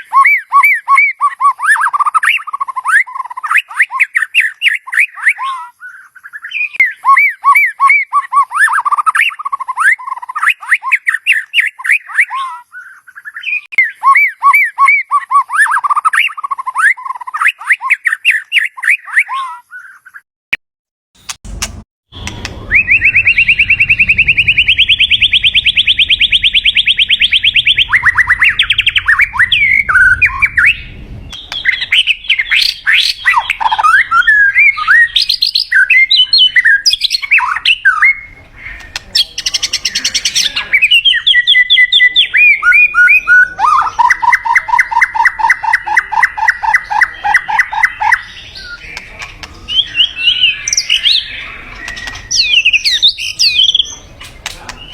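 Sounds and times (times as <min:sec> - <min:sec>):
songbird singing: 0:00.0 - 0:20.2, 0:21.4 - 0:54.9
harsh scratchy bird note: 0:21.2 - 0:26.4.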